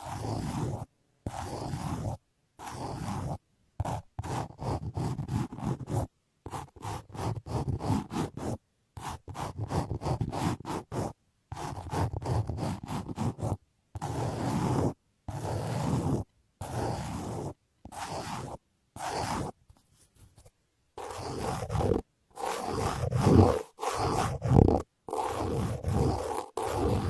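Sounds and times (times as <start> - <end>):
scraping on microphone: 19.2 - 20.5.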